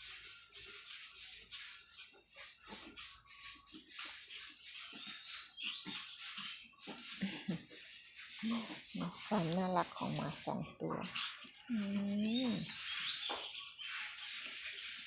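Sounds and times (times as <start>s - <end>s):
dogs making low sounds: 8.4s - 12.8s.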